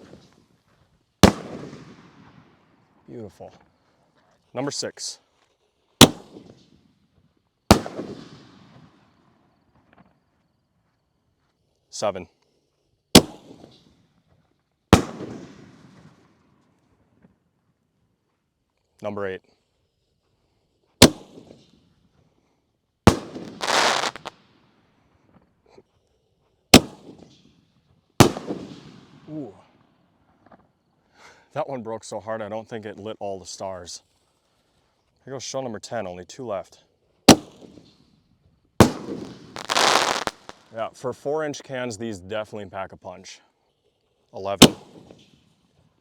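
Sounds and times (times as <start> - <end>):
firework bang with echoing rumble: 1.2 - 2.6, 6.0 - 6.6, 7.7 - 9.1, 15.0 - 16.2, 23.1 - 24.3, 26.8 - 27.3, 28.2 - 29.3, 38.8 - 40.7
firework hissing rush: 23.1 - 24.3, 38.8 - 40.8.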